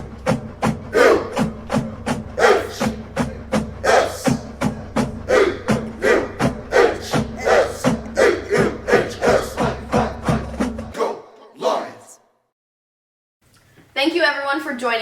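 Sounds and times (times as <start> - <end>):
steady drum beat: 0.0 - 11.0
school fight song music: 0.0 - 12.3.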